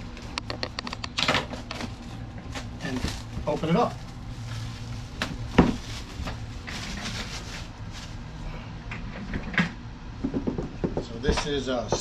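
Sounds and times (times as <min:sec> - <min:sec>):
shrink wrap rustling: 0:01.4 - 0:08.4.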